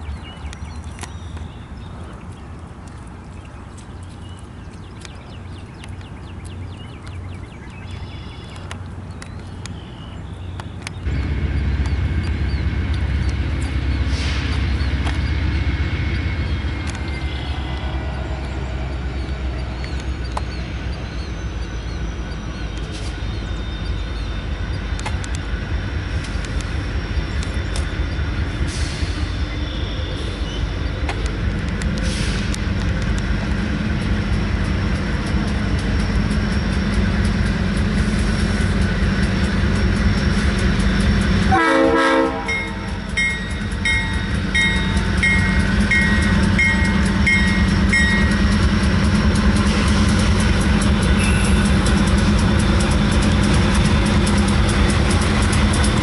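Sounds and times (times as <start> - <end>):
locomotive engine rumble: 0.0 - 56.0
wheels clattering on rails: 0.0 - 56.0
locomotive air horn: 41.5 - 43.0.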